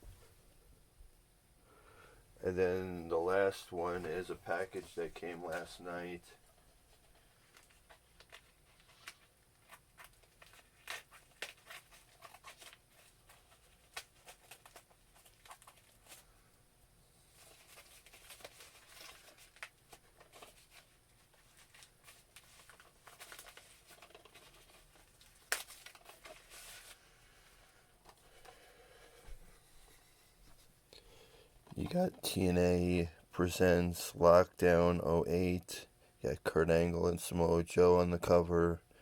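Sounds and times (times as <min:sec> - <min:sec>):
packaging tearing and crinkling: 0:07.5 - 0:16.2, 0:17.4 - 0:27.0.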